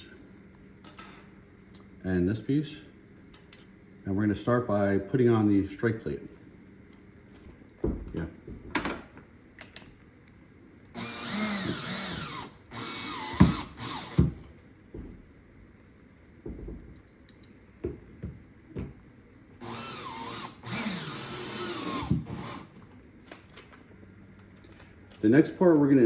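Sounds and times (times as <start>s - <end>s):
cordless drill whining: 10.9s - 14.3s, 19.6s - 22.7s.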